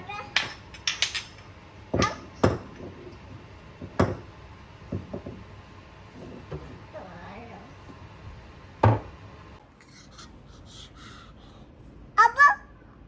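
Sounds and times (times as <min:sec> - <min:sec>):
hard objects knocking and clattering: 0:00.3 - 0:03.2.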